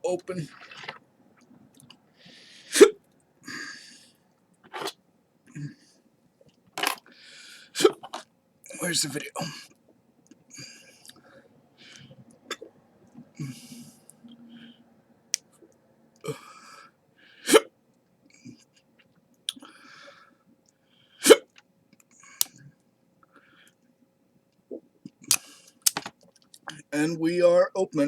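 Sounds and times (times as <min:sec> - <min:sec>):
heavy breathing: 0:02.2 - 0:04.2, 0:13.3 - 0:14.9.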